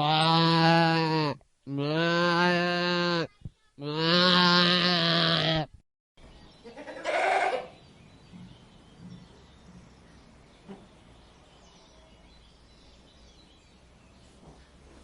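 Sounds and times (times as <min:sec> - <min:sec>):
goats bleating: 0:00.0 - 0:05.7, 0:06.7 - 0:07.7
faint outdoor background: 0:00.0 - 0:15.0.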